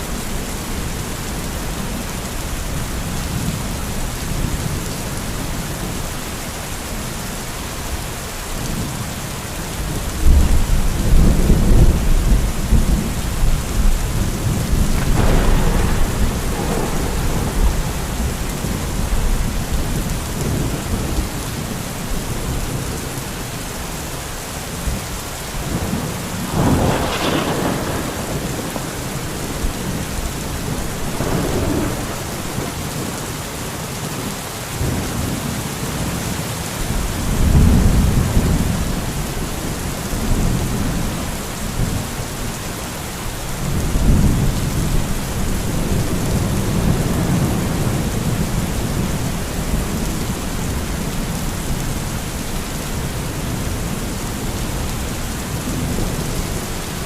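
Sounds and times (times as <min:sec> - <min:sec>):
steady rain: 0:00.0 - 0:57.0
rolling thunder: 0:09.8 - 0:23.0, 0:25.7 - 0:33.5.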